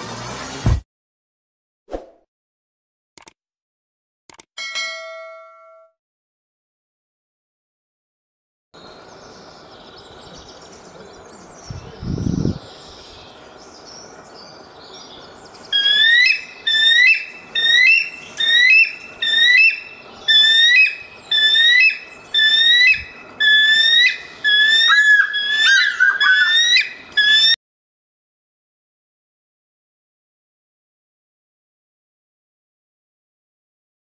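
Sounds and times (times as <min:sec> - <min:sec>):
eagle piping chirps: 0:15.0 - 0:27.6.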